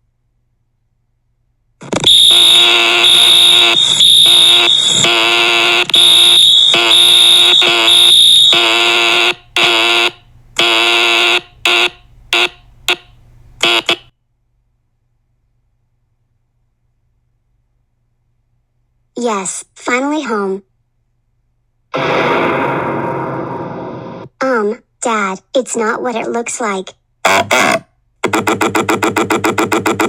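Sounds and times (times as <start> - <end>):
fire alarm ringing: 2.1 - 9.0.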